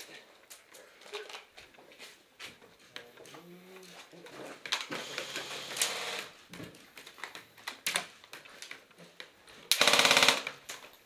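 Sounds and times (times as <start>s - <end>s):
rapid full-auto burst: 9.7s - 10.5s.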